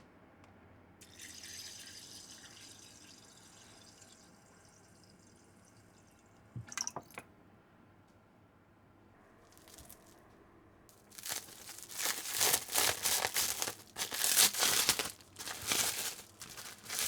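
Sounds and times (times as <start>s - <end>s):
water pouring: 1.0s - 5.2s, 6.6s - 7.2s.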